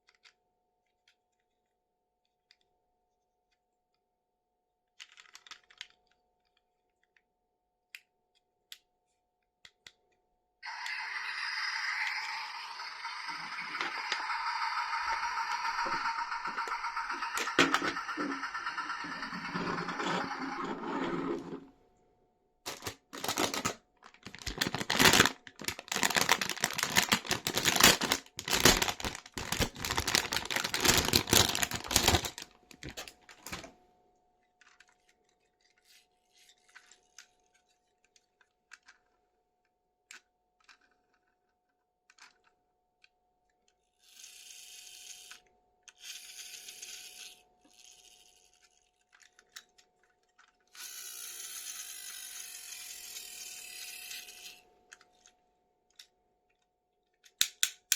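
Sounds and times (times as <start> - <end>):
packaging crackling and tearing: 22.7 - 33.7
small clicks: 57.3 - 57.9.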